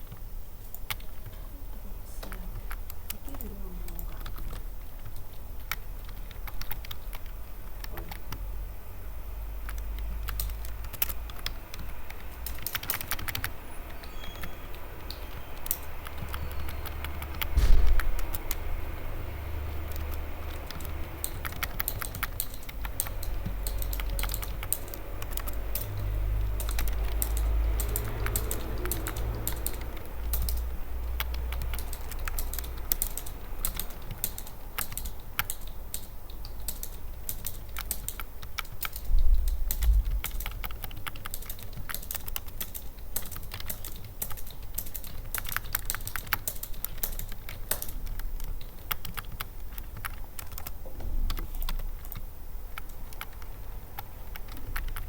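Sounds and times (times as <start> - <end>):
keyboard key clicks: 2.2 - 8.4, 9.6 - 18.6, 19.8 - 55.0
steady low rumble: 17.4 - 21.6, 39.0 - 41.8
loud thump: 17.5 - 18.5.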